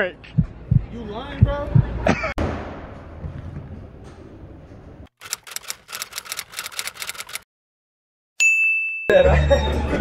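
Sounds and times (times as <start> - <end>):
rapid sharp clicking: 5.2 - 7.4.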